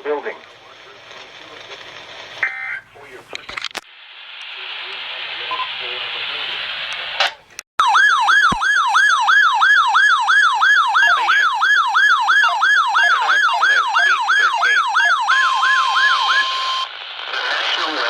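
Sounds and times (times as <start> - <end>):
sweeping siren alert tone: 7.8 - 16.9.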